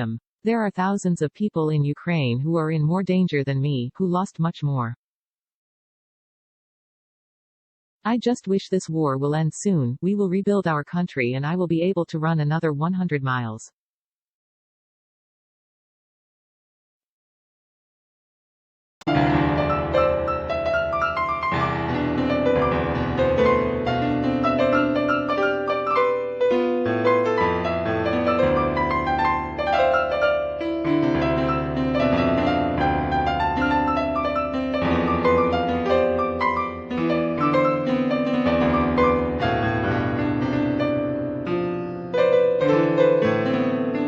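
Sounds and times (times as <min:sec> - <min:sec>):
piano music: 0:19.0 - 0:44.0.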